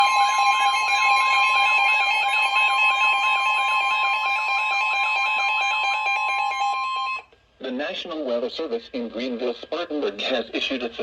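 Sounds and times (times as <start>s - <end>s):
two-tone warbling alert alarm: 0.0s - 7.3s.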